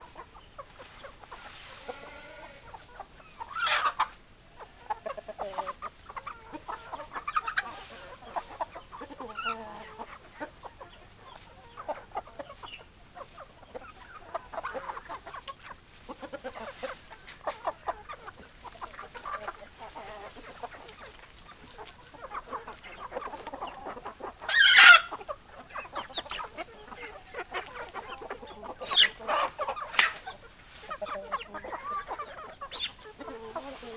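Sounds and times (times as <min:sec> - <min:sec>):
hens clucking: 0:00.0 - 0:33.9.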